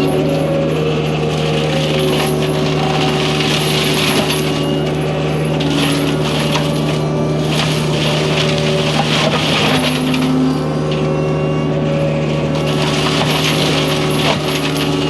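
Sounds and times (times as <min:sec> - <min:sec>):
excavator engine hum: 0:00.0 - 0:15.0
hydraulic whines: 0:00.0 - 0:15.0.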